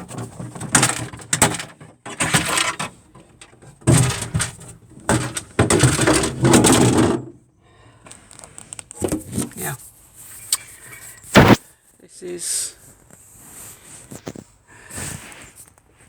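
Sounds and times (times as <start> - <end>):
plastic trim clattering and scraping: 0.0 - 7.3, 8.1 - 9.7.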